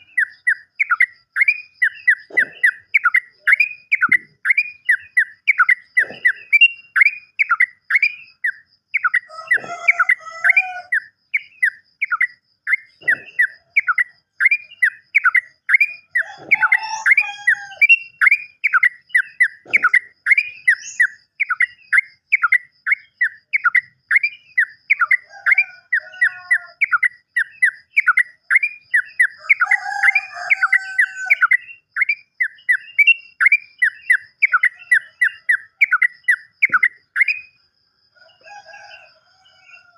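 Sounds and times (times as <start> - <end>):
low chattering bird calls: 0.0 - 37.6.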